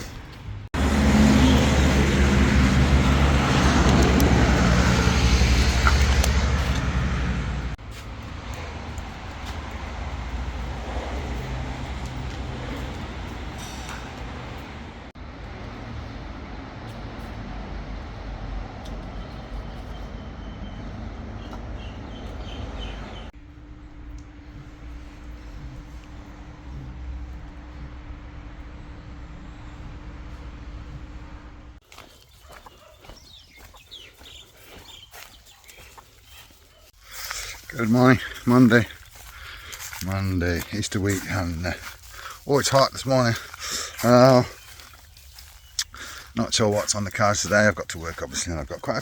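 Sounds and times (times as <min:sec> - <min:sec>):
vehicle and traffic noise: 0:00.0 - 0:49.0
motor engine running: 0:00.8 - 0:31.8.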